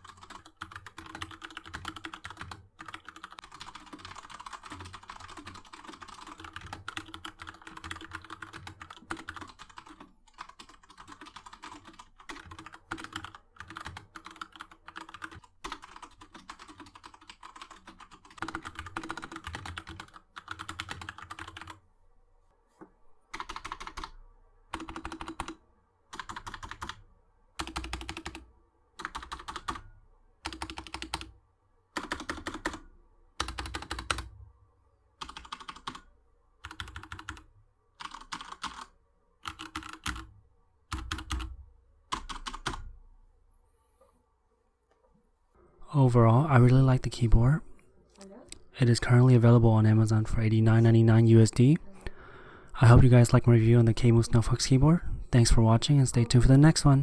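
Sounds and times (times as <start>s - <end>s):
mechanical keyboard typing: 0.0s - 21.8s, 23.3s - 27.0s, 27.6s - 28.4s, 29.0s - 31.3s, 32.0s - 32.8s, 33.4s - 34.3s, 35.2s - 40.3s, 40.9s - 42.9s.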